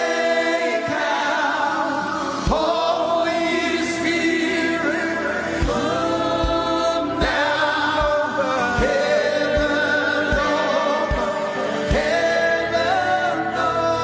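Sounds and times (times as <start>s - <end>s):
gospel singing over keys: 0.0s - 14.0s
slow low drum beat: 5.6s - 12.2s.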